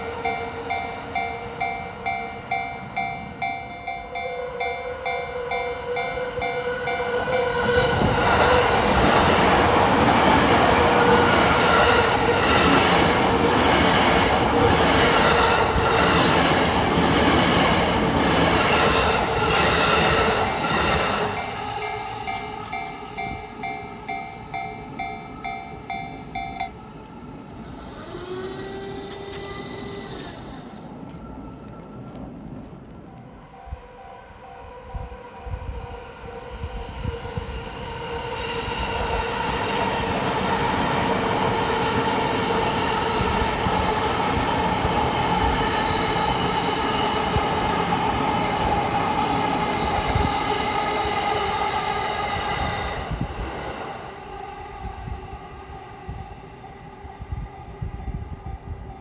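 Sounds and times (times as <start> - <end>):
level crossing warning bell: 0.0 - 8.6, 20.0 - 26.9
train wheels rumbling on rails: 0.0 - 34.0, 34.6 - 59.0.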